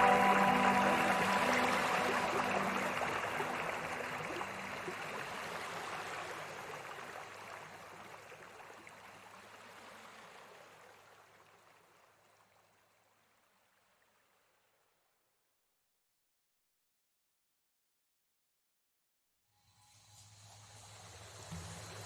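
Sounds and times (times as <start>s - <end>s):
soft sustained music notes: 0.0s - 6.2s
river water rushing: 0.0s - 11.7s.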